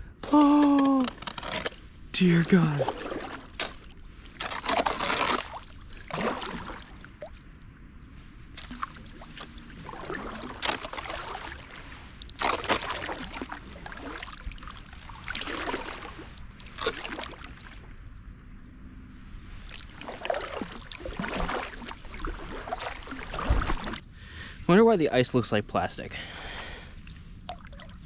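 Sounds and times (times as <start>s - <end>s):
paddle strokes splashing water: 1.3s - 7.5s, 8.4s - 18.1s, 19.4s - 24.0s, 27.0s - 28.0s.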